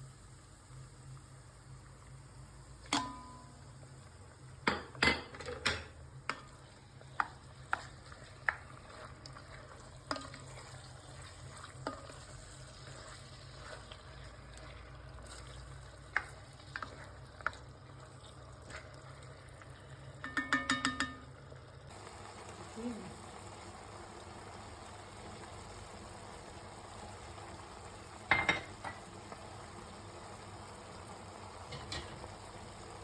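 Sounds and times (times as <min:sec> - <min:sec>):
food frying in oil: 0:00.0 - 0:33.0
spoon knocking pot side: 0:02.9 - 0:03.5, 0:20.2 - 0:21.2
metal spoon stirring in pot: 0:06.3 - 0:17.6.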